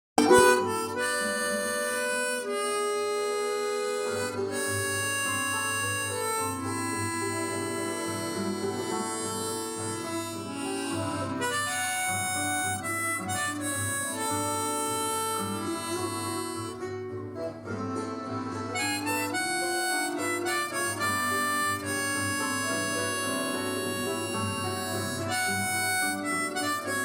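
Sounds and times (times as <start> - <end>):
harmonica melody: 0.2 - 27.0
steady accompaniment: 0.2 - 27.0.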